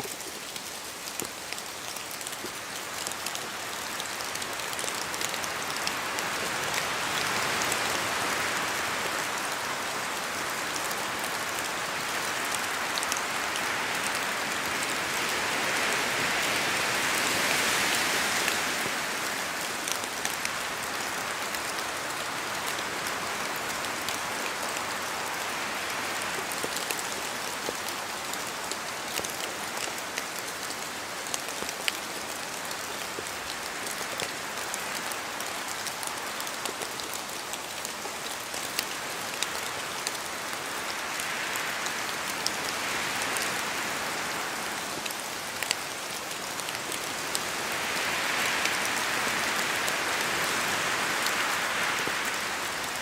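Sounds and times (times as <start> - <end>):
steady rain hiss: 0.0 - 53.0
wind through trees: 0.0 - 53.0.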